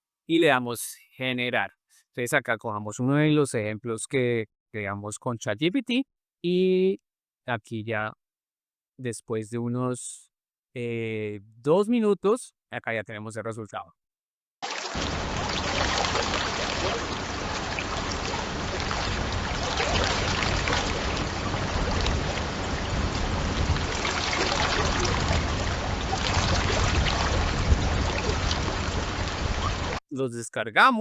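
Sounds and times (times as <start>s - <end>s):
watery rushing noise: 14.6s - 30.0s.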